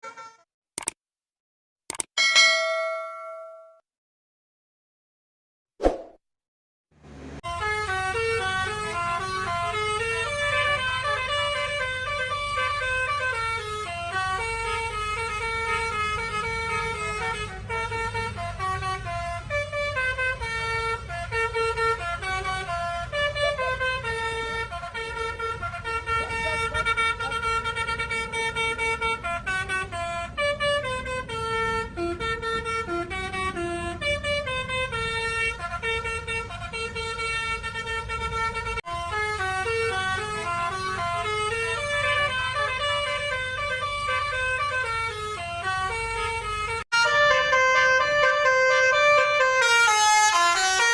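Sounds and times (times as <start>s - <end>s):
multi-note air horns playing tunes: 0.0s - 0.4s, 7.4s - 50.9s
low engine rumble: 7.0s - 50.6s.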